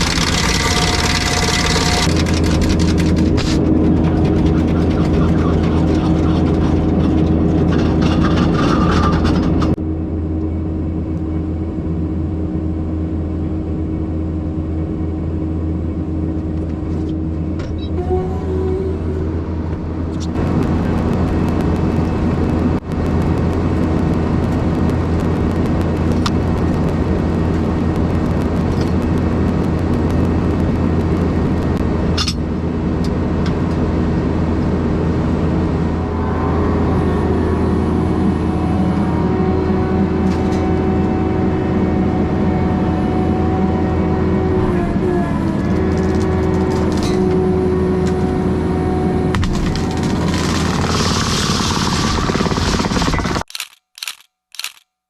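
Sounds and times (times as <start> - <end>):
engine running at high revs: 0.0 - 9.8, 14.4 - 53.5
flail mower whine: 0.0 - 9.8, 33.0 - 53.4.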